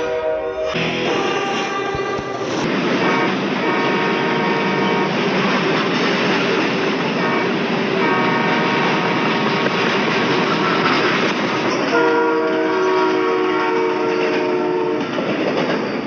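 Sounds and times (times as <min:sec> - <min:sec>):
locomotive air horn blasts: 0:00.0 - 0:05.3, 0:07.1 - 0:09.7, 0:11.9 - 0:15.1
passing train rumble: 0:00.0 - 0:16.0.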